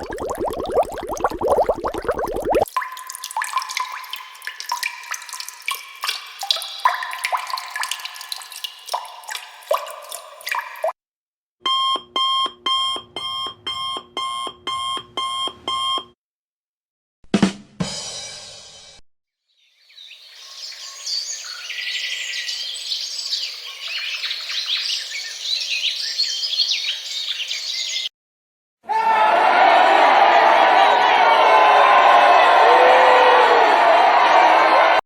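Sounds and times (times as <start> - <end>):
birds chirping and singing: 19.8 - 28.1.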